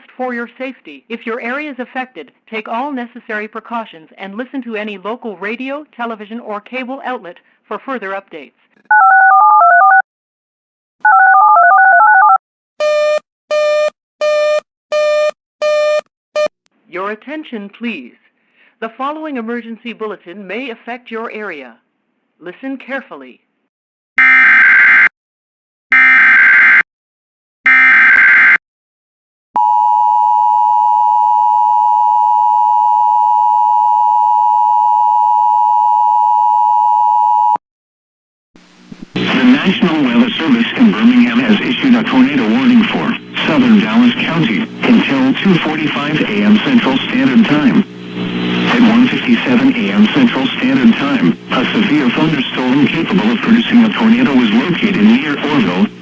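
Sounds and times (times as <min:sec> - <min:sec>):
touch-tone dial tones: 0:08.9 - 0:10.0, 0:11.1 - 0:16.5
buzzy busy-signal beep: 0:12.8 - 0:16.5, 0:39.2 - 0:56.0
steady attention tone: 0:38.6 - 0:56.0.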